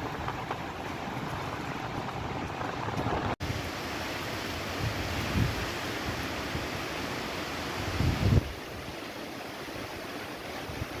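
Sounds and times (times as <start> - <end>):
wind buffeting microphone: 0.0 - 3.7, 4.5 - 6.8, 7.8 - 11.0
strong wind blowing: 0.0 - 7.1, 7.7 - 11.0.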